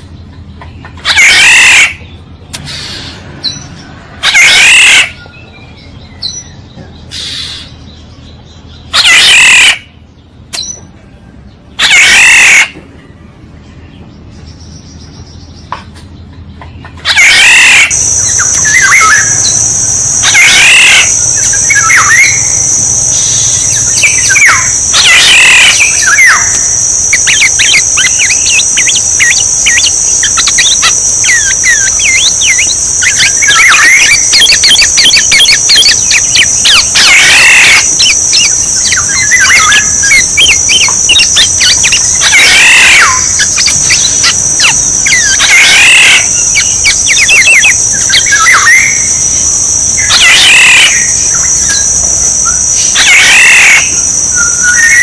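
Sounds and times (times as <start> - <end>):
high insect drone: 4.3 - 5.0, 11.9 - 12.6, 17.1 - 55.0
oriole calls: 17.0 - 55.0
short bird chirps: 17.1 - 55.0.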